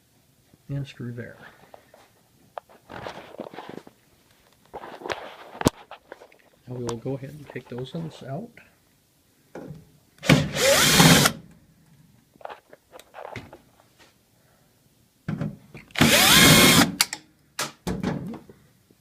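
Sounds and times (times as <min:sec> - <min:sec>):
power drill spinning up: 0:10.2 - 0:11.4, 0:15.9 - 0:16.9
drill trigger blips: 0:16.0 - 0:17.0.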